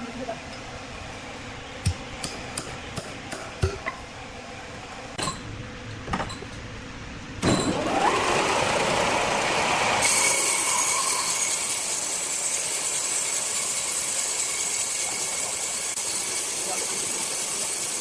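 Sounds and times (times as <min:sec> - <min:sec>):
circular saw running: 0:07.7 - 0:18.0.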